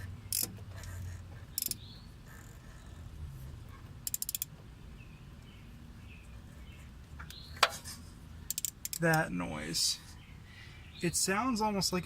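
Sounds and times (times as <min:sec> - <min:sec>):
ratchet wrench clicking: 0:00.3 - 0:00.5, 0:01.6 - 0:01.8, 0:04.0 - 0:04.5, 0:08.5 - 0:09.1.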